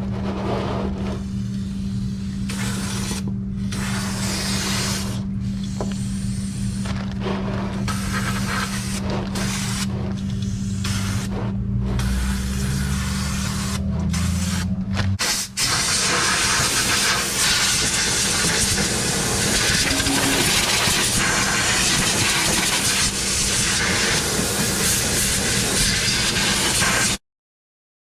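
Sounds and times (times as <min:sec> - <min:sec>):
steady low hum: 0:00.0 - 0:15.2
aerosol can spraying: 0:02.5 - 0:06.8, 0:07.9 - 0:11.3.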